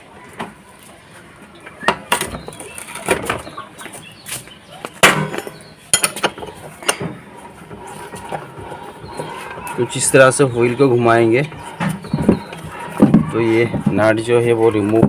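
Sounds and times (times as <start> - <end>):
scooter clanking onto stand: 4.9 - 14.2.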